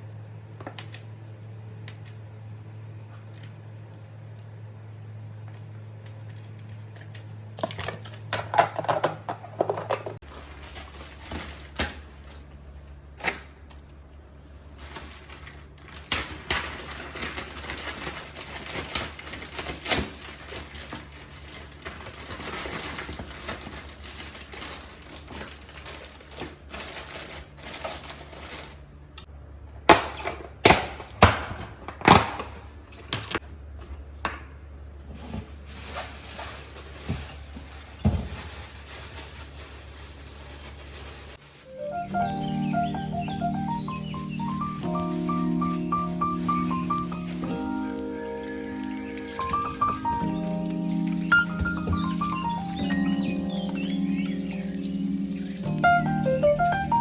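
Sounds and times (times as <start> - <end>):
containers and utensils handled: 6.2 - 12.6.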